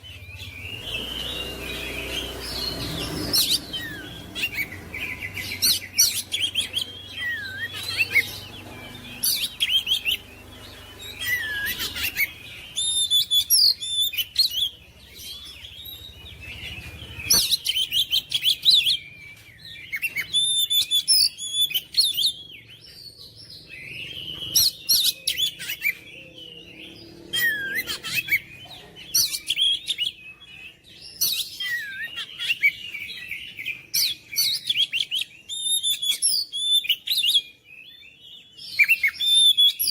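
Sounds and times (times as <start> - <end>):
bird singing whistled phrases: 0.1 - 14.8, 29.2 - 39.9.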